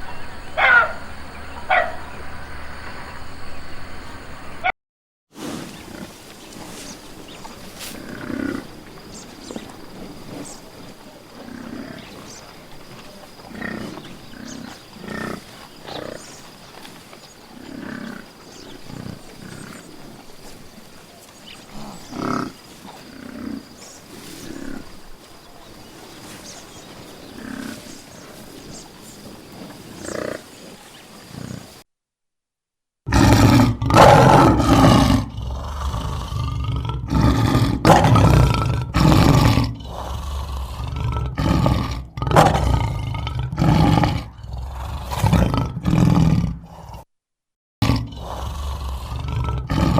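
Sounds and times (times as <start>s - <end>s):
lion grunting calls: 5.6s - 31.8s, 33.1s - 47.0s, 47.8s - 49.9s
lion roaring: 7.7s - 16.4s, 17.5s - 20.1s, 21.5s - 31.8s, 33.1s - 47.0s, 47.8s - 49.9s.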